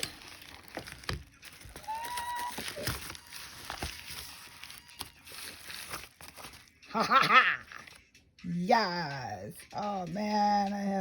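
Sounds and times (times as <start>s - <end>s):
packaging rustling: 0.0s - 6.9s
high-pitched squeak: 1.7s - 5.1s.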